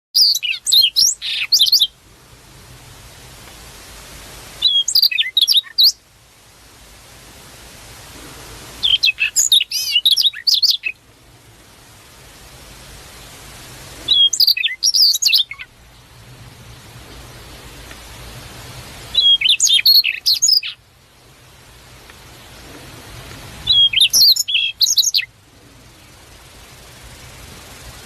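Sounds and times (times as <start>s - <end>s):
songbird twittering: 0.2s - 2.0s, 4.6s - 6.0s, 8.8s - 11.0s, 14.1s - 16.1s, 19.1s - 20.9s, 23.6s - 27.8s
faint steady hiss: 0.2s - 28.0s.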